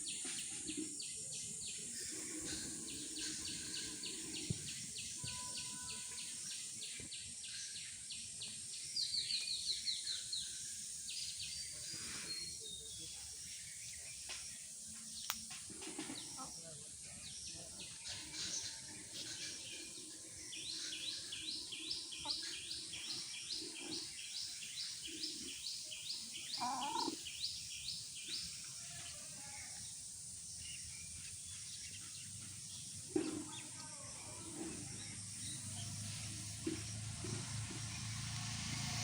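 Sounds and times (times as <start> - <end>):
bird chirping rapidly: 26.1 - 27.5
hen clucking: 26.6 - 27.2.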